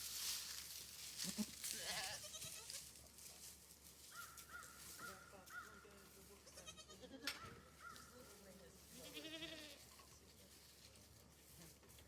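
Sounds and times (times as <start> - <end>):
faint goat bleats: 1.2 - 2.9, 6.4 - 7.3, 9.0 - 9.9.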